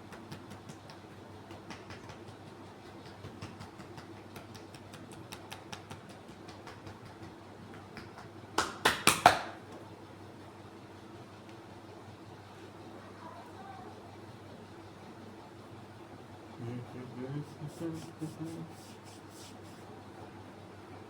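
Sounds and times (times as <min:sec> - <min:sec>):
hands clicking on skin: 0:00.1 - 0:09.6.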